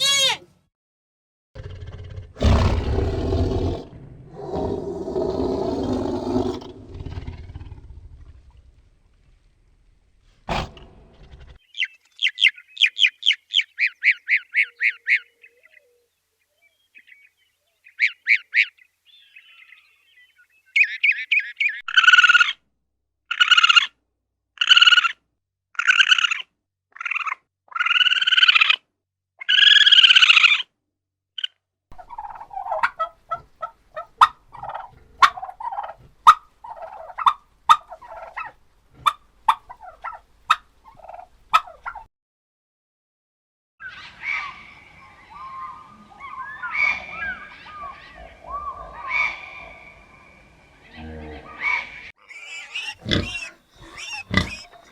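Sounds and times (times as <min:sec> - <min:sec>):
poultry calling: 0:31.9 - 0:42.1, 0:50.8 - 0:54.9.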